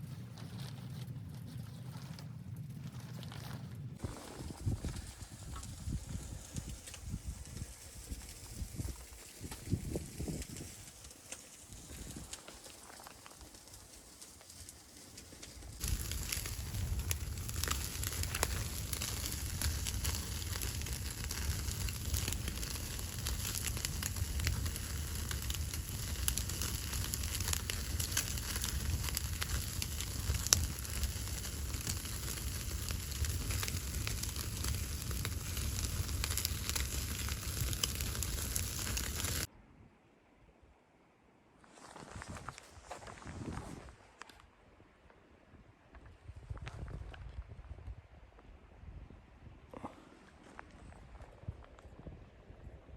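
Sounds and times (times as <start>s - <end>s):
wood fire crackling and popping: 2.6s - 39.5s.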